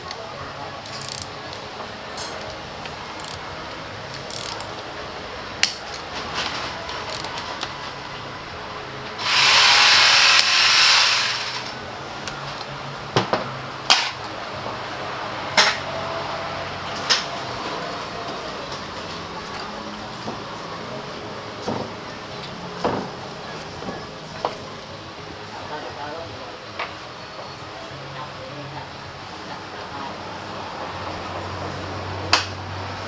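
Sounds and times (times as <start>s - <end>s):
compressed air burst: 9.2s - 11.7s.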